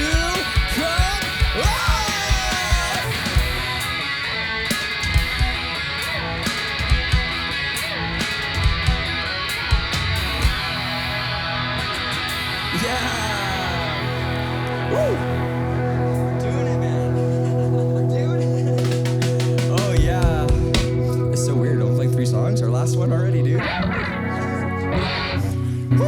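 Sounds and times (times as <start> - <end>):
drums with cymbal crashes: 0.0 - 15.5, 18.6 - 21.1
electric guitar: 0.0 - 26.0.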